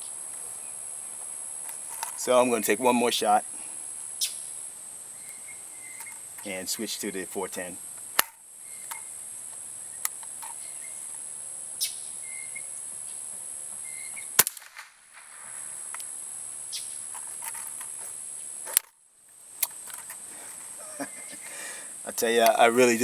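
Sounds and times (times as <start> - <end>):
insect drone: 0.0 - 23.0
gun loading clicks: 14.4 - 15.3, 18.7 - 18.9, 19.6 - 20.2
gunshot cracks: 14.4 - 15.6.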